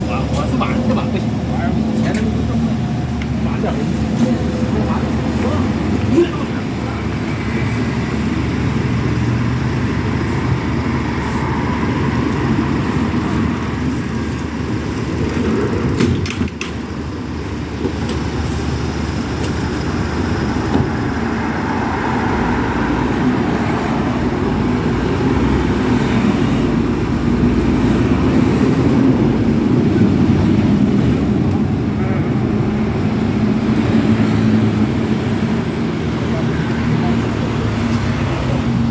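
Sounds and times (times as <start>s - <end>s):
murmur of voices: 0.0s - 15.3s, 28.9s - 33.8s, 34.6s - 38.9s.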